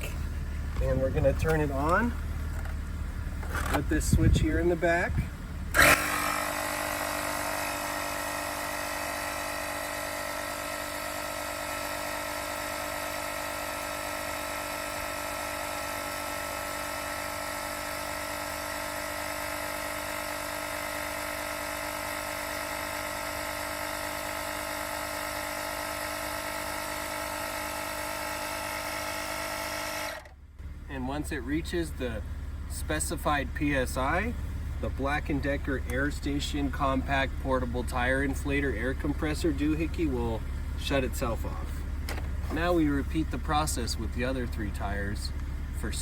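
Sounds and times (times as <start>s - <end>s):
tire inflator compressor running: 0.0s - 46.0s.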